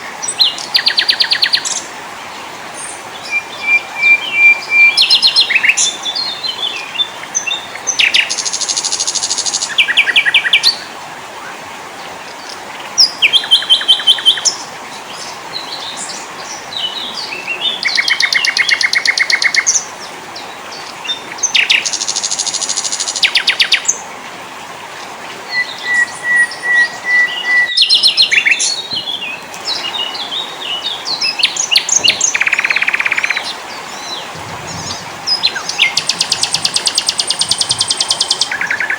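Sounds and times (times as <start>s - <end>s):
songbirds singing and calling: 0.0s - 38.9s
steady background hiss: 0.0s - 38.9s.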